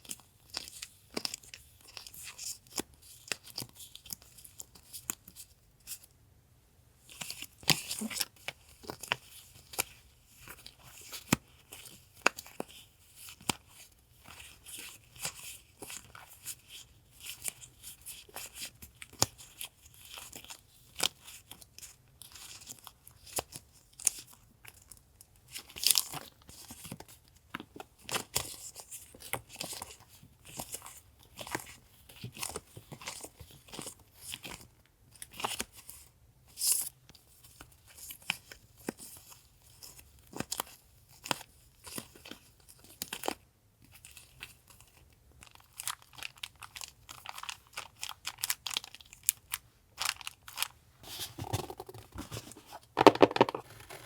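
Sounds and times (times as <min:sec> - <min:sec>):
paper and plastic crinkling: 0:45.4 - 0:54.0
handling knock: 0:51.4 - 0:53.7.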